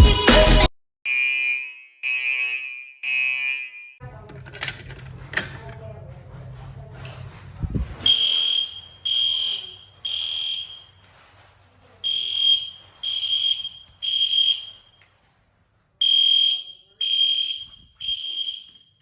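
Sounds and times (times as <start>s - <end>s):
fire alarm beeping: 1.1s - 5.8s, 8.0s - 11.1s, 12.0s - 15.1s, 16.0s - 19.0s.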